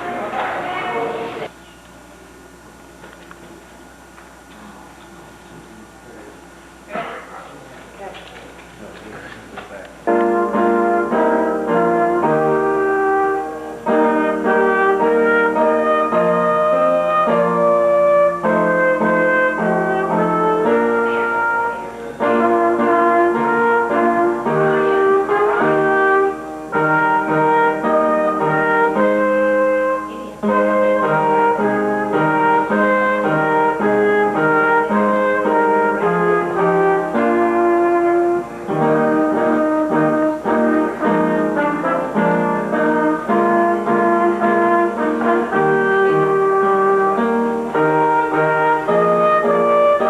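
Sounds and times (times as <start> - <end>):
brass instruments playing chords: 10.0 - 50.0.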